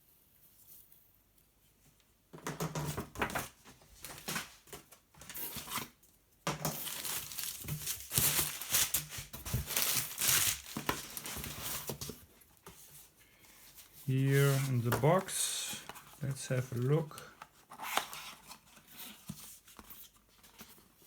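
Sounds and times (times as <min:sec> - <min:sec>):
packaging crinkling by hand: 0:06.7 - 0:12.4.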